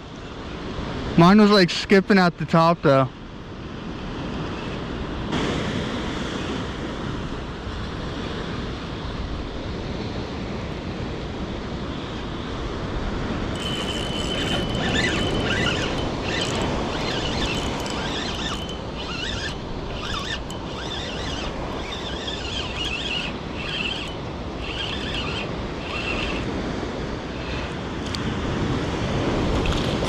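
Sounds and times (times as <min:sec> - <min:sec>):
wind buffeting microphone: 0:13.5 - 0:30.0
short high-pitched chirping: 0:13.6 - 0:26.4.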